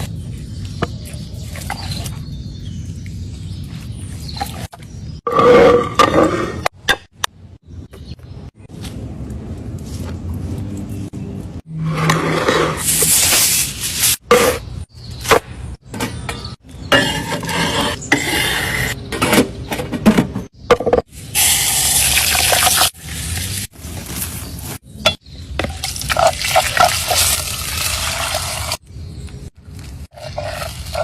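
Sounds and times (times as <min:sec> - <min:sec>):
cooking sounds: 0:21.1 - 0:24.8, 0:25.6 - 0:28.9, 0:29.6 - 0:31.0.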